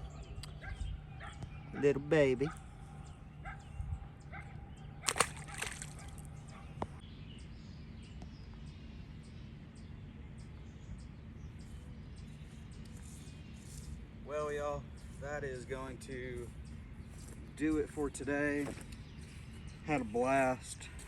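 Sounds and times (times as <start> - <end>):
fish splashing into water: 5.0 - 6.2.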